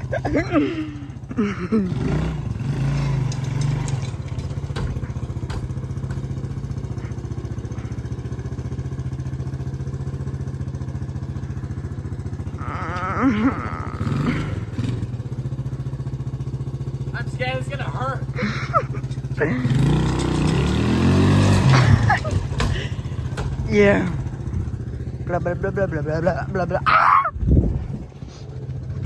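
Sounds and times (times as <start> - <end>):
atv engine idling: 0.0 - 29.0.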